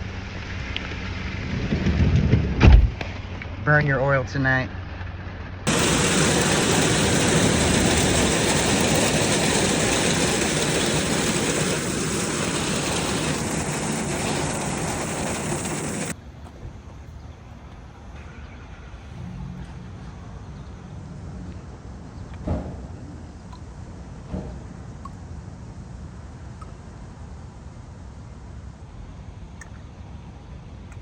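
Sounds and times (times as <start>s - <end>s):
heavy rain: 5.7s - 16.1s.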